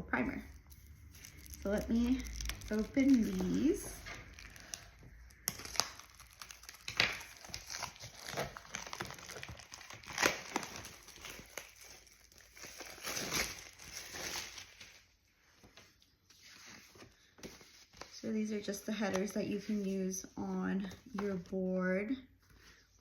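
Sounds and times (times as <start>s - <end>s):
packaging crinkling and tearing: 0.5s - 15.1s.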